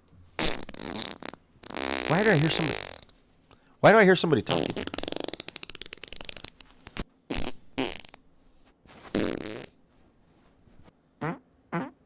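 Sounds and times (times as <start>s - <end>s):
fart sounds: 0.3s - 3.2s, 4.5s - 9.8s, 11.2s - 12.0s.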